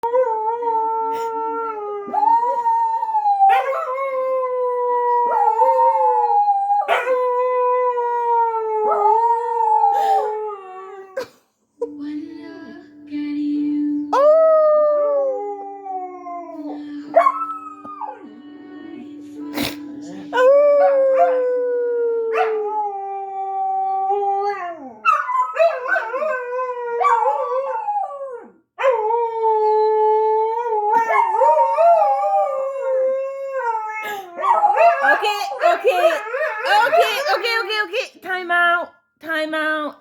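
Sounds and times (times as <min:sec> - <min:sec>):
dogs howling: 0:00.0 - 0:11.2, 0:20.3 - 0:37.3
steady low tone: 0:11.8 - 0:22.9.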